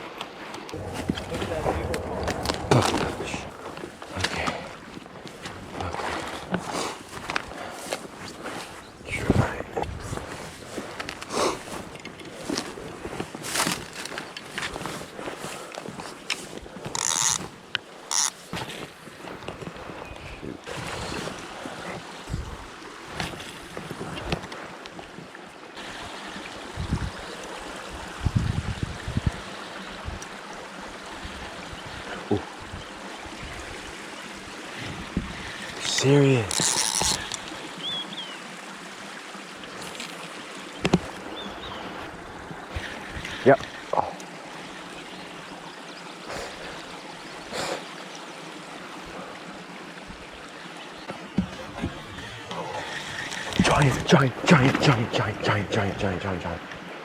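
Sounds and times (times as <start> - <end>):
water swishes: 0.0 - 57.0
water trickling: 0.7 - 20.4, 25.2 - 57.0
dull low bumps: 0.8 - 4.8.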